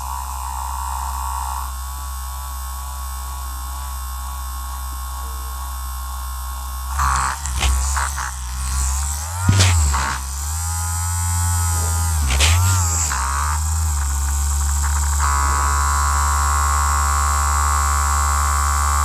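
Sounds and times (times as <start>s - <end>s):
vibrating massager humming: 5.6s - 19.0s.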